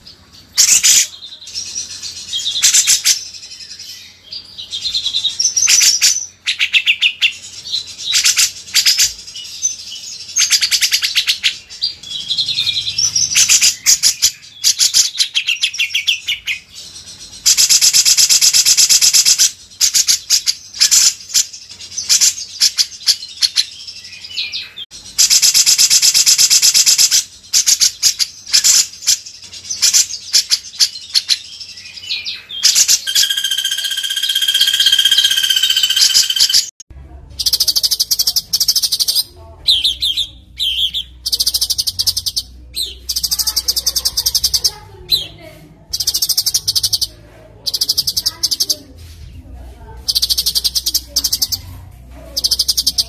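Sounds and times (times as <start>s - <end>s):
songbird trills and chattering: 0.0s - 49.3s, 49.9s - 53.0s
long whistled bird phrase: 33.0s - 36.7s.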